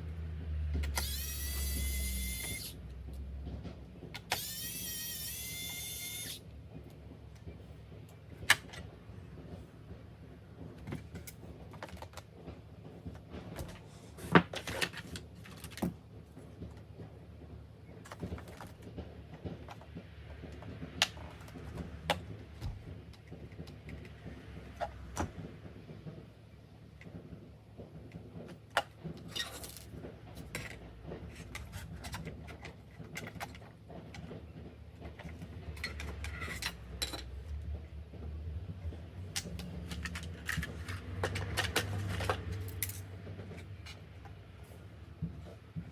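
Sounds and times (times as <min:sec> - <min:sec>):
small electric motor whining: 0:00.8 - 0:02.9, 0:04.2 - 0:06.4.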